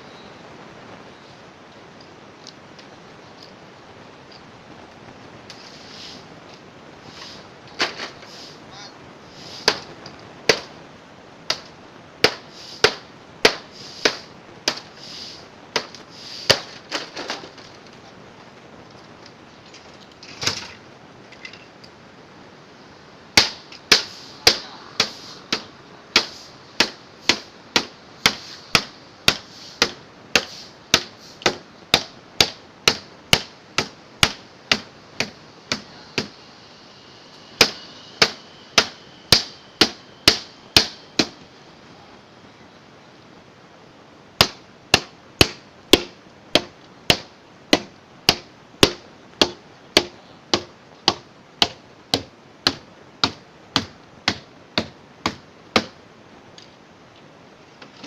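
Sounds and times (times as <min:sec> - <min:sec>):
hammer striking metal: 0:37.4 - 0:41.4.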